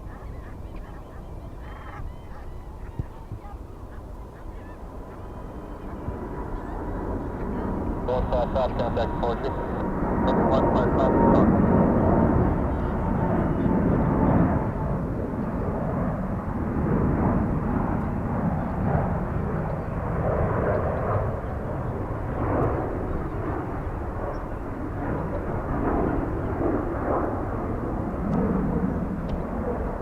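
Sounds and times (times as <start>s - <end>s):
jet engines rumbling: 0.0s - 30.0s.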